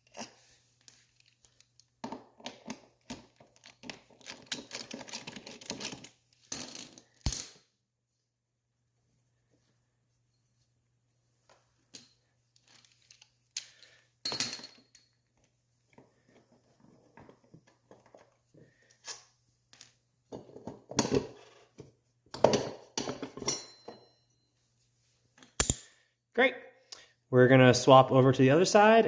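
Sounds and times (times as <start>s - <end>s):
hand tools and bolts clinking: 0.0s - 7.6s, 11.9s - 15.4s, 22.3s - 24.5s, 25.4s - 26.0s.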